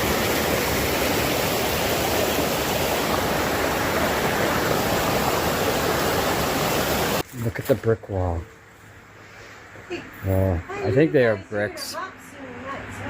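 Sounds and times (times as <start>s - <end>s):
water rushing: 0.0s - 7.2s.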